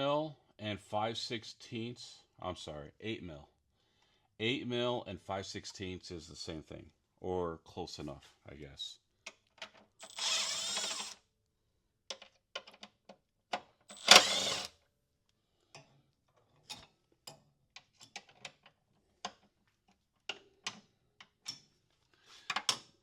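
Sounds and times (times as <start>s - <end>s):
socket ratchet clicking: 13.9s - 14.7s.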